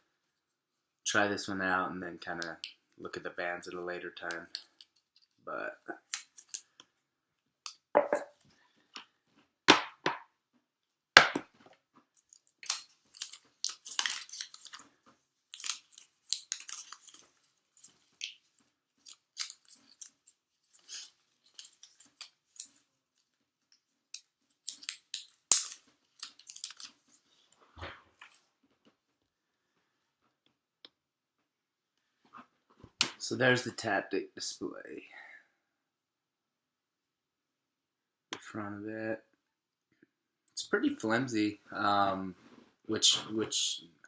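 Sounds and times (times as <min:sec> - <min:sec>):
packaging rustling and crinkling: 0:12.1 - 0:28.5.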